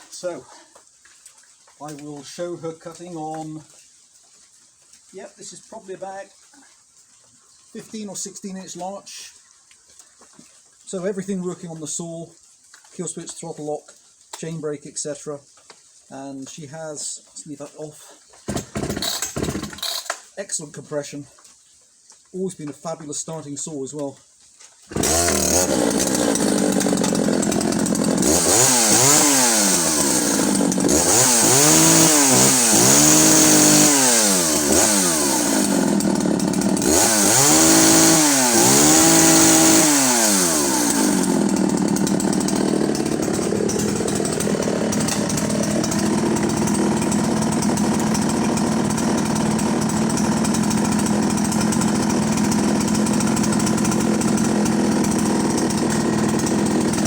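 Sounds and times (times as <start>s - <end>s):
chainsaw revving and idling: 18.5s - 20.3s, 24.9s - 57.0s.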